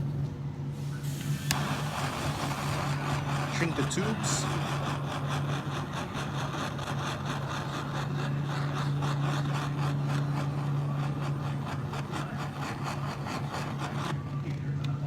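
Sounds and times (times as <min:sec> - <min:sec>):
gas torch flame hissing: 0:00.0 - 0:14.2
steady low hum: 0:00.0 - 0:15.0.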